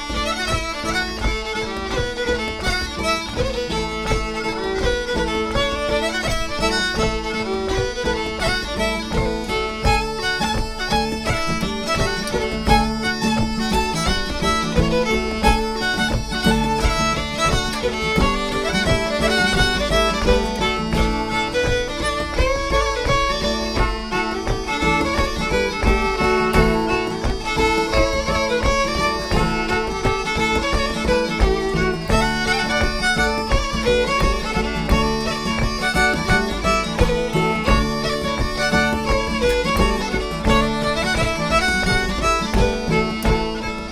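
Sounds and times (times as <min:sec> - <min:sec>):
fiddle melody: 0:00.0 - 0:43.9
guitar accompaniment: 0:00.0 - 0:43.9
flute melody: 0:03.8 - 0:43.9
frame drum beat: 0:11.2 - 0:43.8.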